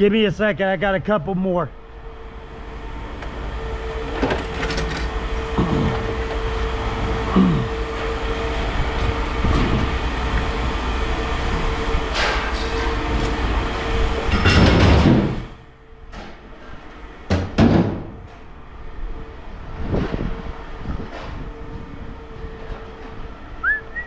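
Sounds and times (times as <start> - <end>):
machine hum: 0.0 - 24.0
scrap metal scraping and clanking: 4.0 - 6.1.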